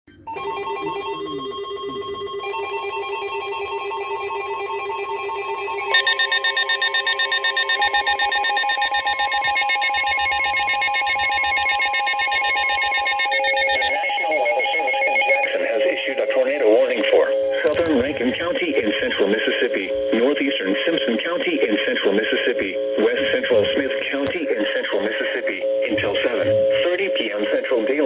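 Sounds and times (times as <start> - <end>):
electronic emergency alert tones: 0.3 - 28.0.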